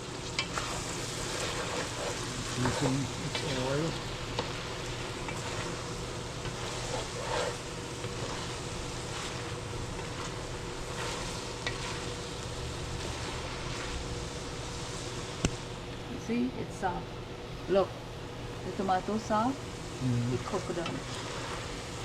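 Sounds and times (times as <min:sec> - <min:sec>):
food sizzling in oil: 0:00.0 - 0:22.0
stirring utensil taps: 0:00.3 - 0:13.9.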